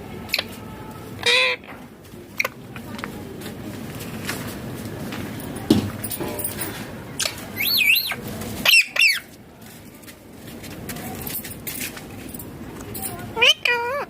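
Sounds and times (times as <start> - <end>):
parakeet warbling calls: 1.2 - 1.7, 7.2 - 9.2, 13.4 - 14.0.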